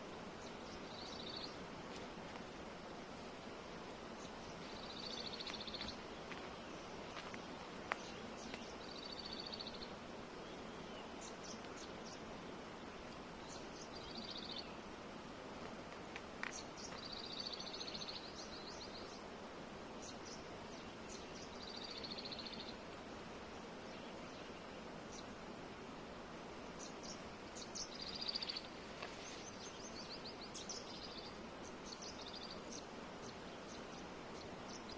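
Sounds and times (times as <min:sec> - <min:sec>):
flowing water hiss: 0:00.0 - 0:34.9.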